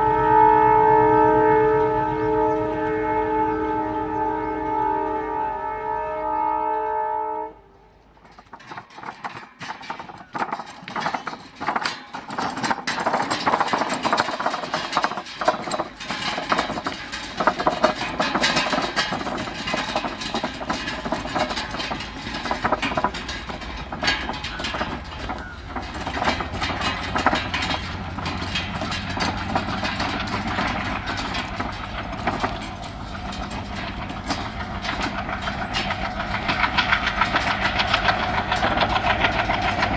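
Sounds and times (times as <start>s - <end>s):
locomotive horn: 0.0s - 8.1s
diesel engine chugging: 7.7s - 39.9s
train clattering on rails: 7.9s - 39.9s.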